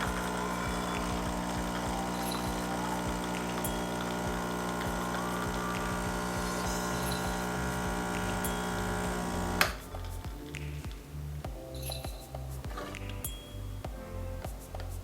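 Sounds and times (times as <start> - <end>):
espresso machine pump buzzing: 0.0 - 9.8.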